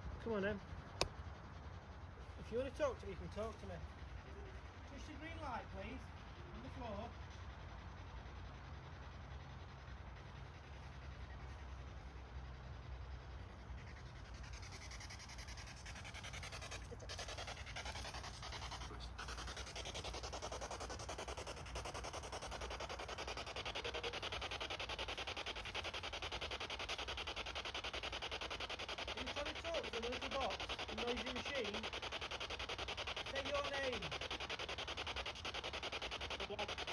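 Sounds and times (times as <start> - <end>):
pulsing static hiss: 19.2 - 36.9.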